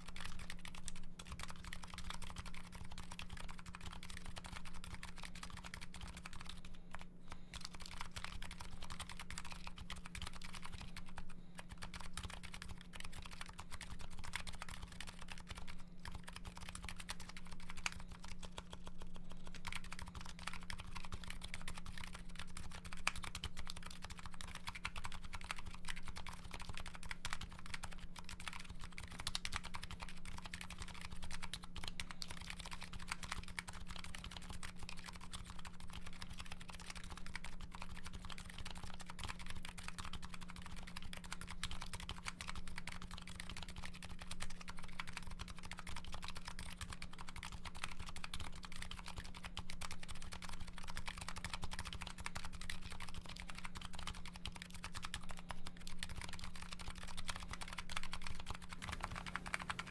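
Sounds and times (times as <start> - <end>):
fast keyboard typing: 0.0 - 59.9
steady low hum: 58.5 - 59.9.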